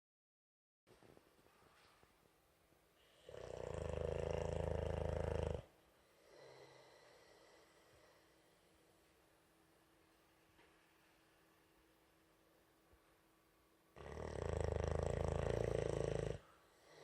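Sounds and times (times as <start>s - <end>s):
puppy snoring loudly: 3.0s - 7.1s, 14.0s - 17.0s.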